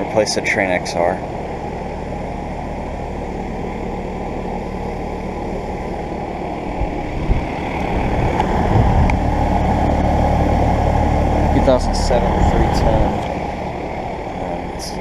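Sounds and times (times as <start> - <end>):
air conditioner compressor hum: 0.0 - 15.0
fan airflow noise: 0.0 - 15.0
low thumps: 6.7 - 9.6.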